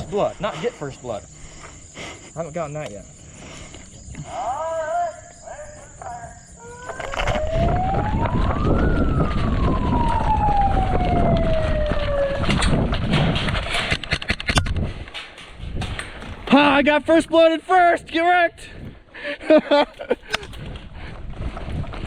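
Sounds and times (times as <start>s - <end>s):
siren winding up: 6.6s - 12.8s.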